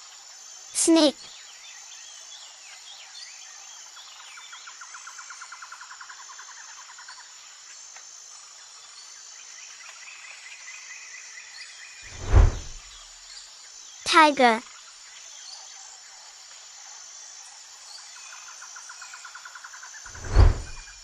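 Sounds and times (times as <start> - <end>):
insects trilling and chirping: 14.8 - 20.0.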